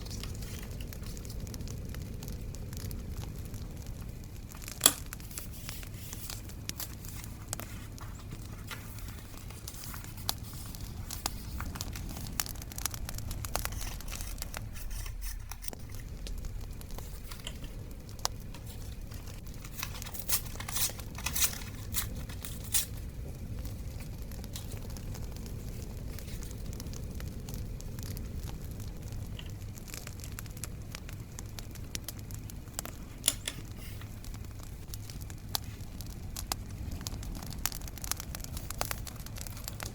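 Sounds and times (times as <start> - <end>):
bonfire crackling pops: 0.0 - 39.9
low rumble: 0.0 - 39.9
paper crinkling and tearing: 4.5 - 23.1.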